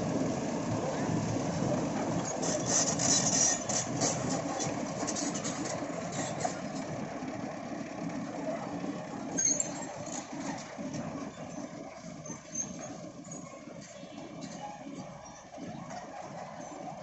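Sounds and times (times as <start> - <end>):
diesel engine running: 0.0 - 17.0
brief high squeak: 9.4 - 9.8.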